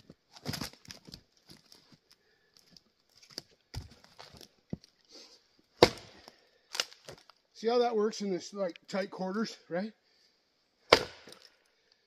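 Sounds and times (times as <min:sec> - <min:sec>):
heavy axe thud: 0:05.8 - 0:06.3, 0:10.9 - 0:11.4.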